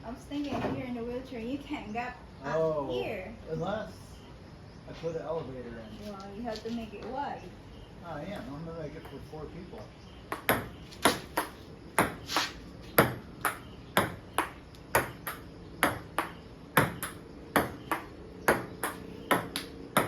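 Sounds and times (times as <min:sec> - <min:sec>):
ping-pong ball clicking: 0:10.3 - 0:12.2, 0:13.0 - 0:20.0.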